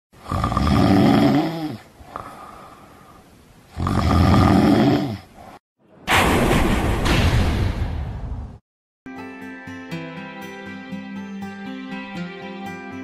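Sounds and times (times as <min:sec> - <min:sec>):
person snoring: 0:00.2 - 0:05.4.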